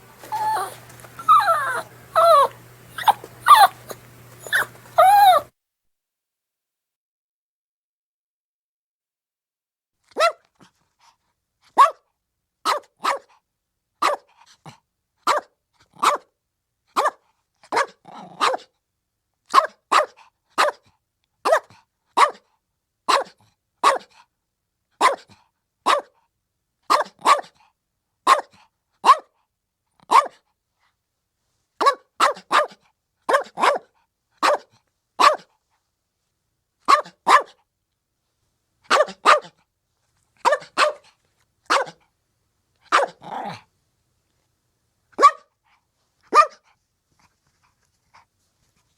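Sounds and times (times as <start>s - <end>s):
puppy yappy barking: 0.2s - 5.5s, 10.1s - 10.4s, 11.8s - 12.0s, 12.7s - 13.3s, 14.0s - 14.3s, 15.3s - 16.3s, 17.0s - 18.7s, 19.5s - 20.8s, 21.4s - 22.4s, 23.1s - 24.1s, 25.0s - 25.3s, 25.9s - 26.1s, 26.9s - 27.5s, 28.3s - 29.3s, 30.1s - 30.4s, 31.8s - 35.5s, 36.9s - 37.6s, 38.9s - 39.6s, 40.4s - 41.1s, 41.7s - 42.0s, 42.9s - 43.6s, 45.2s - 45.5s, 46.3s - 46.7s.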